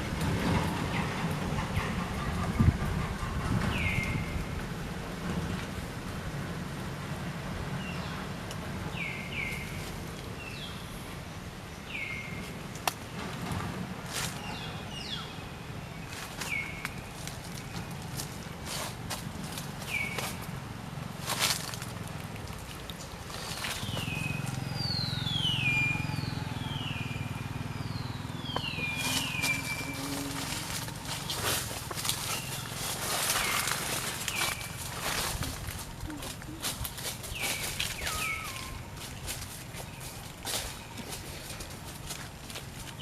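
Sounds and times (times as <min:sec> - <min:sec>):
low engine hum: 0:00.0 - 0:43.0
high-pitched animal calls: 0:37.8 - 0:39.0.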